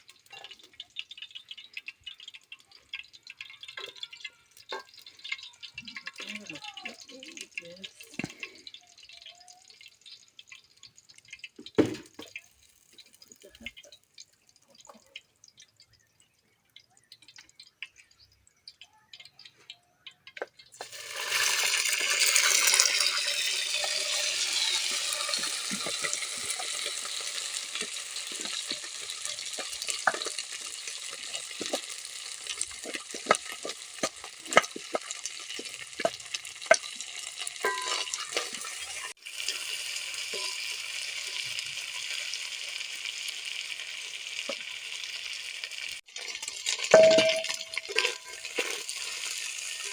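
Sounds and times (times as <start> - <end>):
food sizzling in hot oil: 0.0 - 49.9
spoon tapping against pan: 37.6 - 38.4, 46.9 - 48.7.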